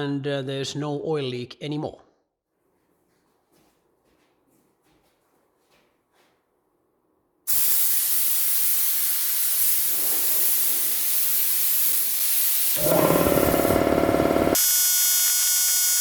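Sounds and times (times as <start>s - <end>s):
relief valve venting air hiss: 7.5s - 13.7s.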